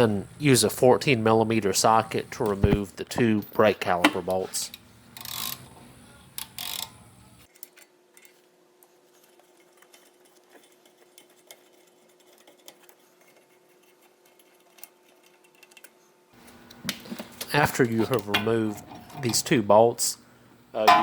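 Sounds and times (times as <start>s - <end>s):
socket wrench clicking: 5.2s - 5.6s, 6.4s - 7.0s
hand tools clattering: 17.4s - 19.6s, 20.8s - 21.0s.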